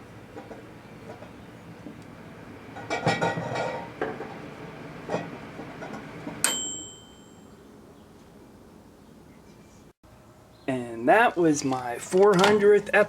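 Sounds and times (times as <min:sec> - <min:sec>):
microwave oven humming: 0:00.0 - 0:07.7
sharp click with high ring: 0:06.4 - 0:07.5.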